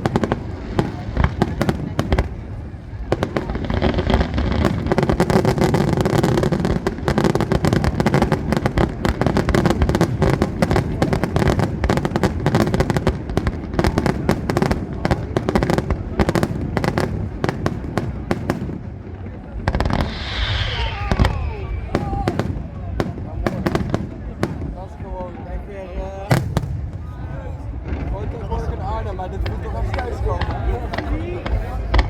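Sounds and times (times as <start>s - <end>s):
fireworks bangs and crackles: 0.0s - 32.0s
low rumble: 19.4s - 23.4s.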